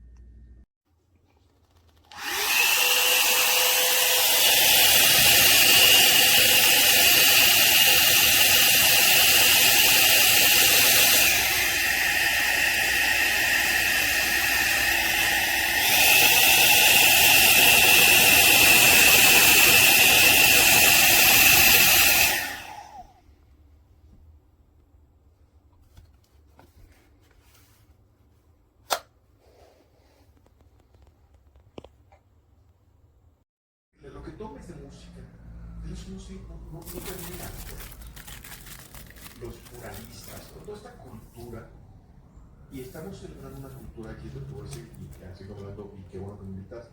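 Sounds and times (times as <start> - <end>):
hair dryer motor whine: 2.1 - 23.2.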